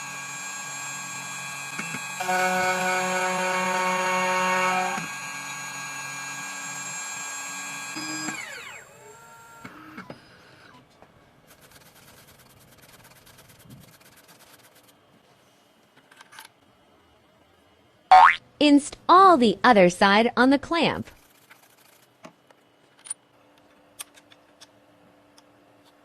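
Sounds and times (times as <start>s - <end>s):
key cutting machine whine: 0.0s - 10.1s.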